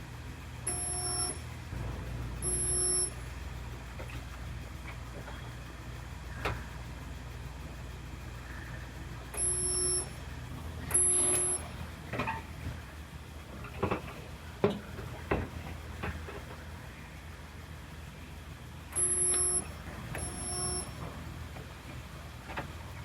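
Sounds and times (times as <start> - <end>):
steady low hum: 0.0 - 23.0
short electronic beeps: 0.7 - 1.4, 2.4 - 3.2, 9.4 - 10.2, 10.9 - 11.7, 19.0 - 21.0.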